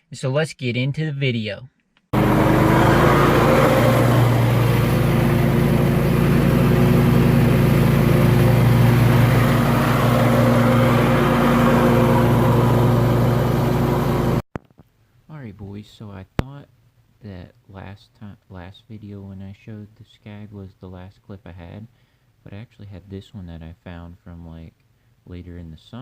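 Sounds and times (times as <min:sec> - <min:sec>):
lawn mower engine running: 0:02.2 - 0:14.4.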